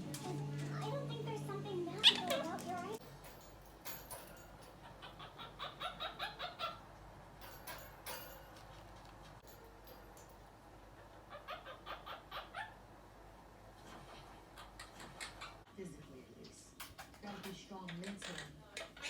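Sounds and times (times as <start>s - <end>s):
parrot chirping: 1.9s - 3.0s, 4.7s - 7.0s, 10.8s - 12.9s, 13.9s - 15.7s, 16.9s - 19.0s.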